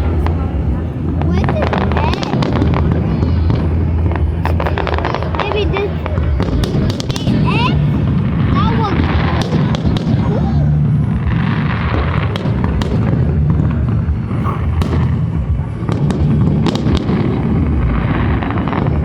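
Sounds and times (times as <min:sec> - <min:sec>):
fireworks booming: 0:00.0 - 0:19.0
fireworks cracking and popping: 0:00.0 - 0:19.0.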